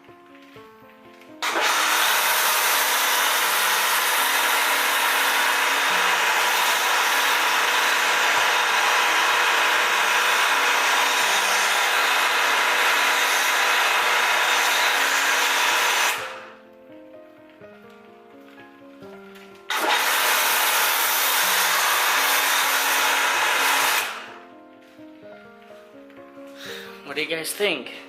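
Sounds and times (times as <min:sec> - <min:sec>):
pressure washer spraying foam: 0:01.4 - 0:16.5, 0:19.7 - 0:24.4.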